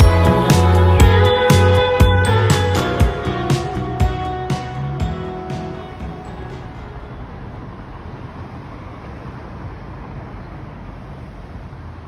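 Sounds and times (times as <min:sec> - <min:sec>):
bullet train running: 0:00.0 - 0:12.0.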